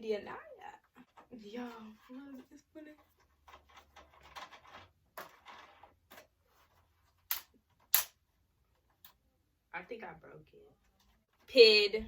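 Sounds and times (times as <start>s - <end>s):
plastic parts clicking and rattling: 0.9s - 9.2s
sharp plastic snaps: 7.2s - 8.2s.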